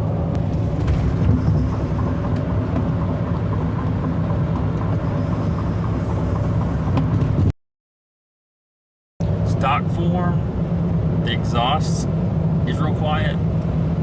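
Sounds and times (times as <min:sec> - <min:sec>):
car engine droning: 0:00.0 - 0:07.5, 0:09.2 - 0:14.0
road noise: 0:00.0 - 0:07.5, 0:09.2 - 0:14.0.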